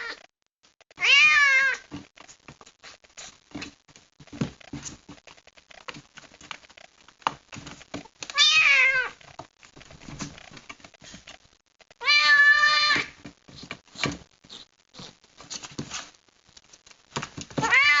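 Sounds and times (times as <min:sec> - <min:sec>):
faint knocks and scratches: 0:01.8 - 0:12.0, 0:12.8 - 0:18.0
kitten meowing: 0:12.0 - 0:13.1, 0:17.6 - 0:18.0.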